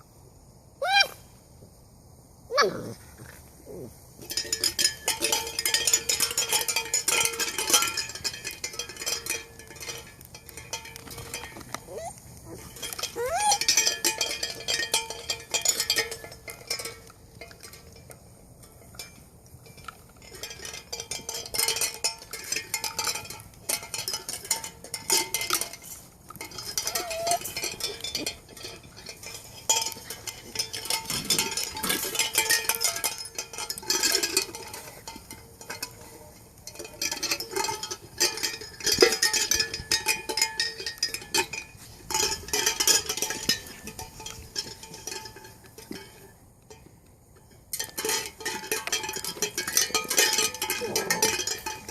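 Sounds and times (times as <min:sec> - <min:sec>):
clinking and clattering: 0:04.2 - 0:51.9
puppy squeaks: 0:11.9 - 0:12.6, 0:13.2 - 0:13.6, 0:27.0 - 0:27.4.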